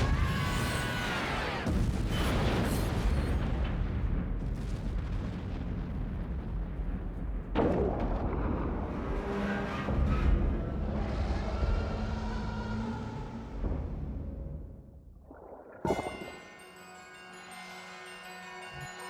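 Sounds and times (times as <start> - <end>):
sudden explosion: 1.6 - 9.3
low explosion rumble: 1.6 - 16.4.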